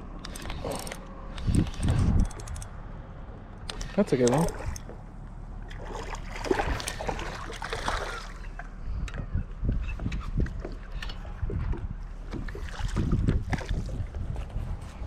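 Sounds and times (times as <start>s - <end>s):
wind buffeting: 0.0s - 3.4s, 8.7s - 15.0s
water splashing and hissing: 5.7s - 8.6s
boat thumps and knocks: 9.1s - 14.6s.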